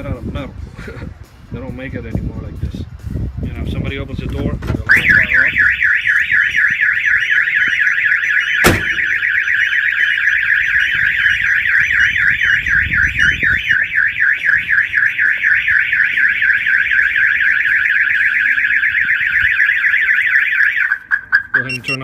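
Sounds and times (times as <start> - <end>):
car alarm siren warbling: 4.9 - 22.0.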